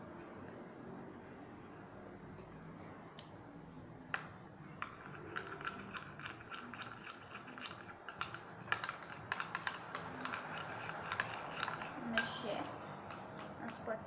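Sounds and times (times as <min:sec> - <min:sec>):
spoon scraping a small pot: 0:04.7 - 0:14.0.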